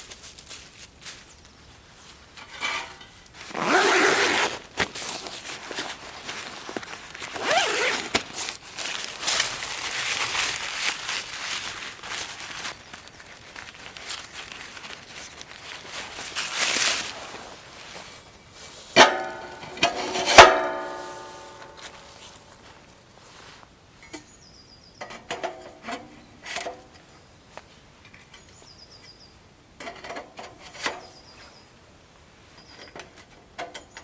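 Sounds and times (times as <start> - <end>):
rustling and handling: 0.0 - 23.7.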